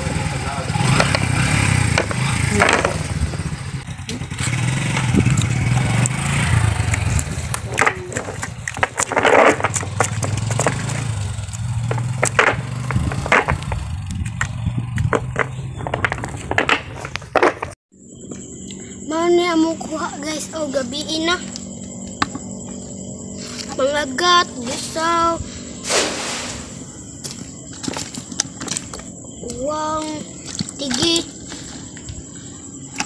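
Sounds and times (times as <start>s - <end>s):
small engine running: 0.0s - 16.4s
sharp knocks and clatter: 1.9s - 3.2s, 7.1s - 11.2s, 11.8s - 17.8s.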